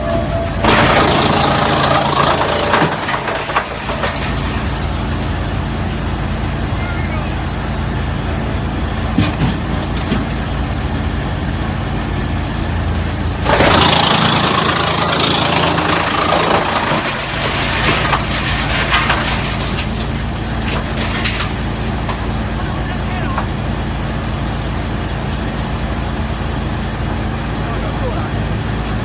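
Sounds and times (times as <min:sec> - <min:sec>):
wood chipper humming: 0:00.0 - 0:29.0
log crunching and cracking: 0:12.8 - 0:22.4.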